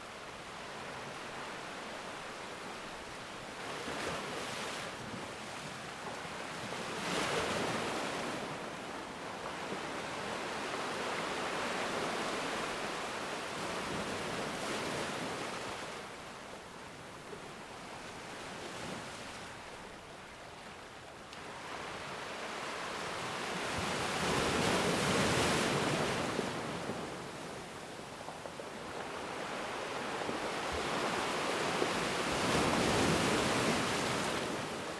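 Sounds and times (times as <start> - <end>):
sea waves washing in: 21.4 - 34.9.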